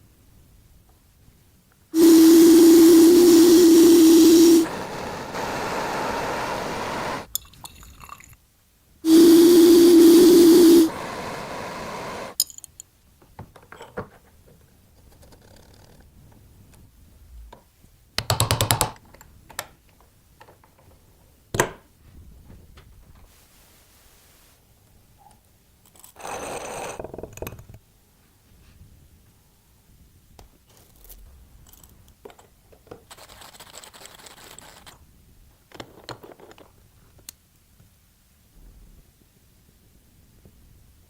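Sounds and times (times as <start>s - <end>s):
power tool motor whine: 2.0s - 7.3s, 9.1s - 12.4s.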